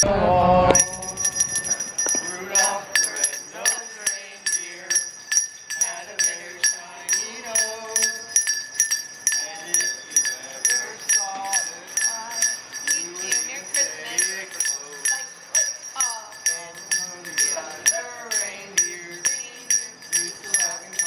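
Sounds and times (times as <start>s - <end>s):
people's voices: 0.0s - 5.1s, 9.3s - 21.0s
handbell ringing: 0.7s - 21.0s.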